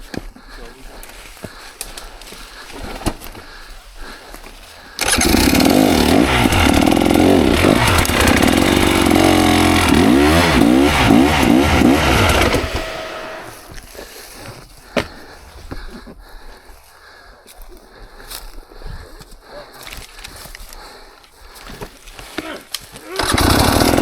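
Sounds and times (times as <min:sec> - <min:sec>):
dirt bike engine revving: 0:05.0 - 0:13.9, 0:23.1 - 0:24.0.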